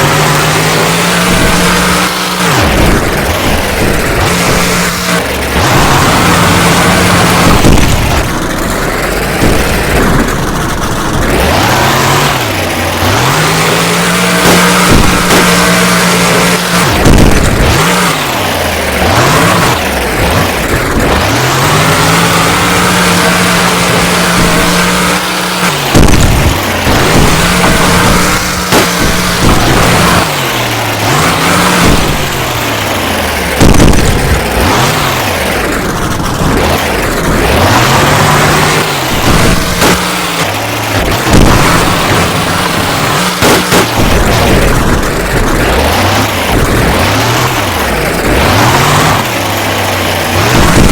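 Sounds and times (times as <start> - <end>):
sharp bangs: 0.0 - 50.9
truck engine revving hard: 0.0 - 50.9
loud thump: 2.6 - 6.4, 7.3 - 8.6, 9.4 - 11.3, 14.4 - 15.8, 16.9 - 17.8, 24.2 - 25.1, 25.8 - 30.4, 31.5 - 32.5, 33.6 - 34.6, 39.1 - 45.5.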